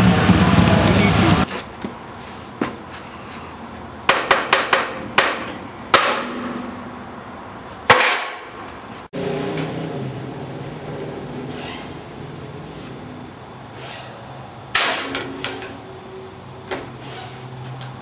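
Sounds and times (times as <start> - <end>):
hammer striking metal: 4.1 - 6.7, 7.9 - 8.6.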